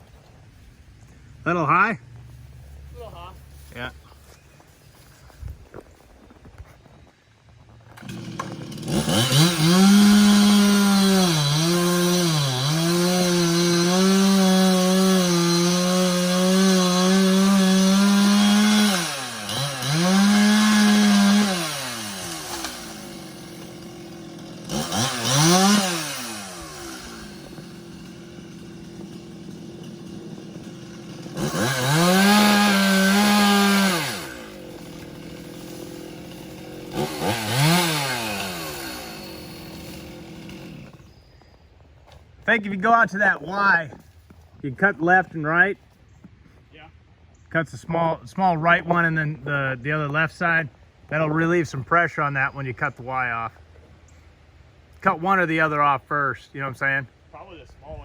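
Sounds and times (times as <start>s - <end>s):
chainsaw revving and idling: 8.0s - 41.2s.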